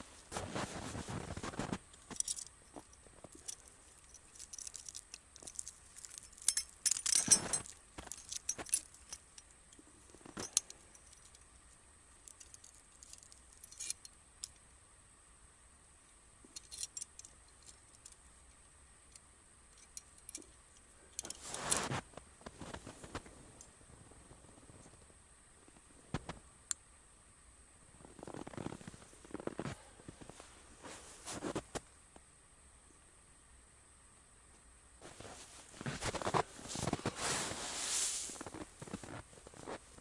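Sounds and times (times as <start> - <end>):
small metal objects clinking: 2.1 - 9.2
brief rustle: 35.0 - 39.8.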